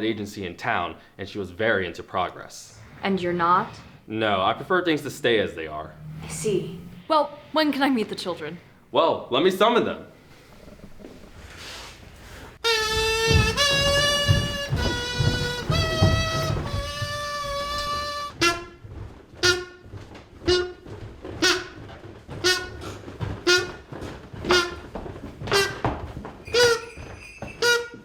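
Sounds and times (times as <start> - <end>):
whistle blowing: 12.6 - 18.8, 19.4 - 19.8, 20.4 - 20.8, 21.4 - 21.8, 22.4 - 23.8, 24.5 - 24.8, 26.4 - 28.0.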